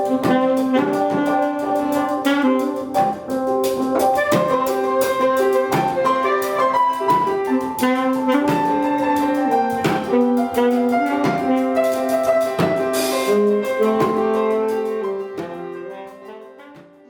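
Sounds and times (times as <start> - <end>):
ringtone tune on horns with drums: 0.1 - 6.7, 7.5 - 12.2.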